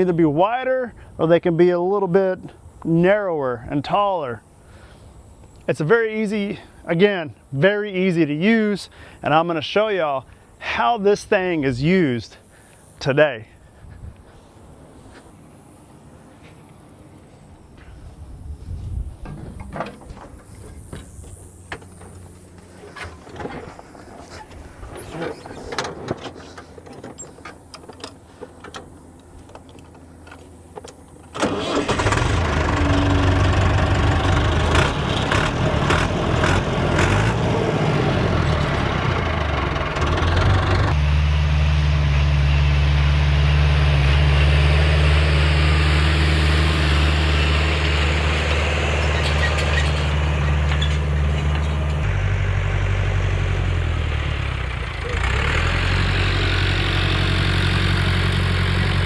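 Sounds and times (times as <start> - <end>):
diesel tractor engine starting: 19.2 - 59.0.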